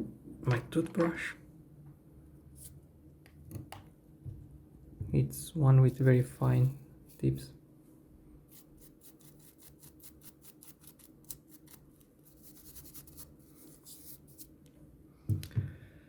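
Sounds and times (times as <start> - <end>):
toothbrush bristles scratching: 8.5 - 14.5.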